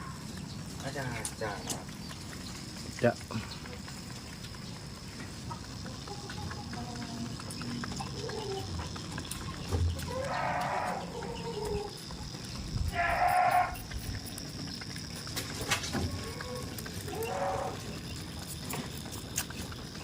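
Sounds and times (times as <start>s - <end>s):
goats bleating: 10.1s - 11.9s, 12.9s - 13.8s, 16.1s - 17.9s.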